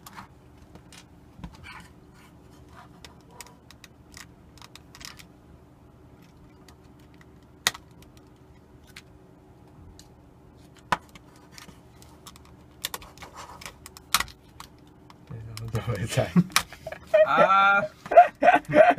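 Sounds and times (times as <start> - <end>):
plastic parts clicking and tapping: 10.8 - 15.9.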